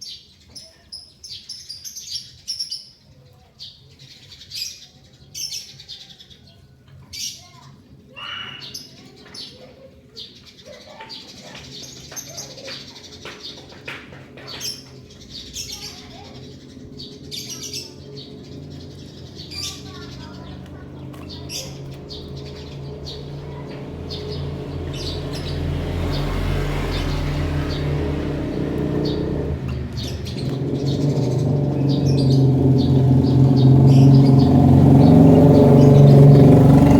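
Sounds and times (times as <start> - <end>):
cage birds chirping: 0.0 - 36.9
low engine-like rumble: 11.4 - 36.9.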